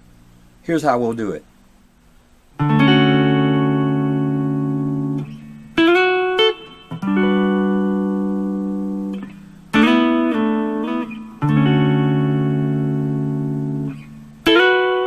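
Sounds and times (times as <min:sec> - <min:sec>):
guitar chords with slides: 0:02.6 - 0:15.0.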